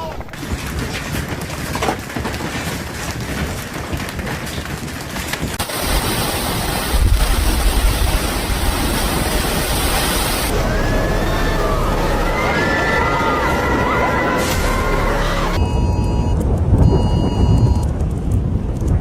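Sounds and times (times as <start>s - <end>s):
heavy rain: 5.2s - 19.0s
strong wind rushing: 5.5s - 19.0s
low rumble: 6.7s - 19.0s.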